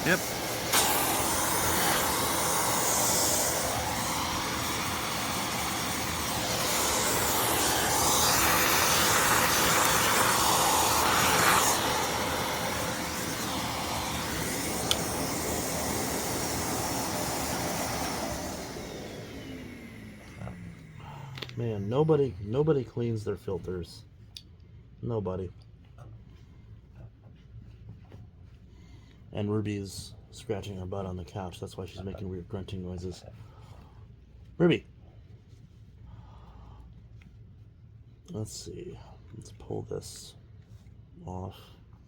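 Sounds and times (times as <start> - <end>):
vacuum cleaner motor running: 0.0 - 22.6.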